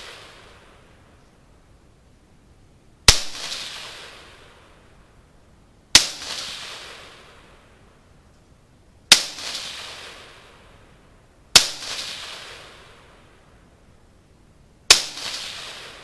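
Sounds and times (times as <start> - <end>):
gunshots with long echo: 3.1 - 4.7, 11.6 - 13.2, 14.9 - 16.0.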